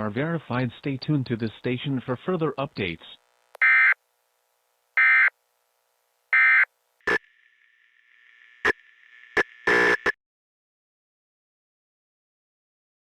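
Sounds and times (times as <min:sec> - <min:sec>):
faint steady tone with crackle: 0:03.1 - 0:10.2
buzzing electronic chirps: 0:06.4 - 0:10.2.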